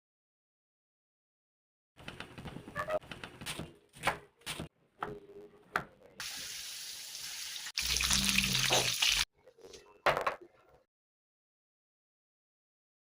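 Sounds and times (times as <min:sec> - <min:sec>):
water running from a tap: 0:06.2 - 0:09.3.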